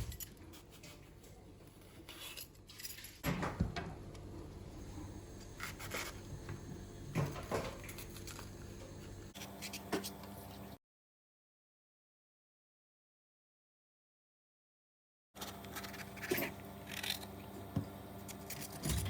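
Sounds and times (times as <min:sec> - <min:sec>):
low background hum: 0:00.0 - 0:10.8, 0:15.4 - 0:19.0.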